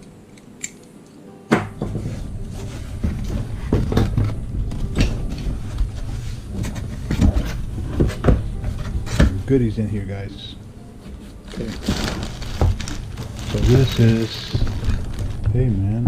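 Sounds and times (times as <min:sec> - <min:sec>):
packaging rustling: 0:11.3 - 0:15.6.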